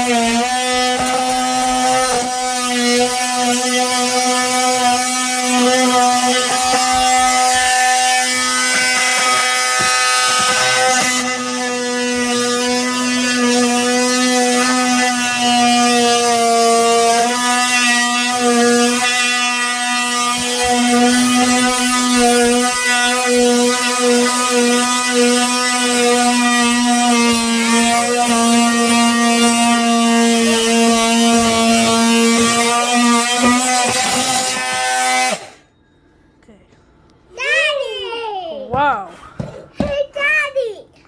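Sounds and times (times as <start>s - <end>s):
oscillating multi-tool buzzing: 0.0s - 35.7s.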